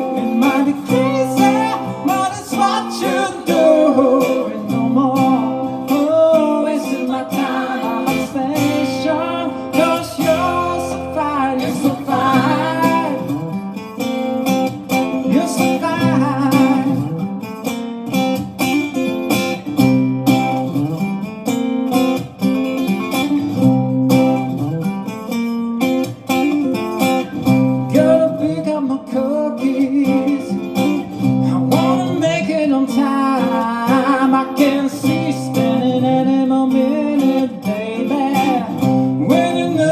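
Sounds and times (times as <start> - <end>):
person singing: 0.0 - 13.8, 15.0 - 17.2, 27.8 - 39.9
acoustic guitar playing: 0.0 - 39.9.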